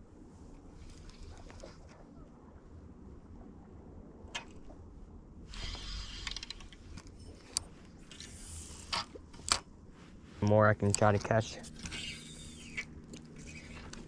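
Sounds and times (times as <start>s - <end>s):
fishing reel whirring: 5.5s - 9.6s, 11.6s - 14.0s.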